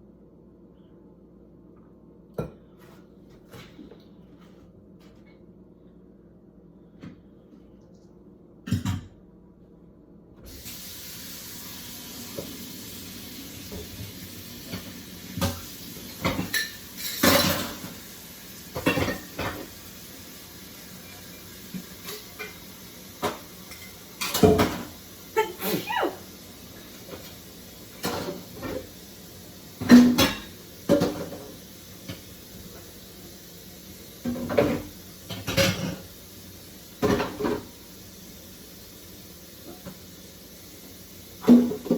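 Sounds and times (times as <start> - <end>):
kitchen tap running: 10.5 - 41.9
dishes and utensils clattering: 14.6 - 18.0, 18.7 - 19.8, 21.8 - 24.9, 28.0 - 28.9, 29.8 - 32.3, 34.2 - 36.1.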